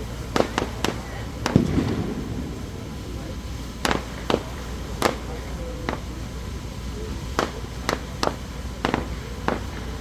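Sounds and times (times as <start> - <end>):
firework shells bursting: 0.3 - 6.1.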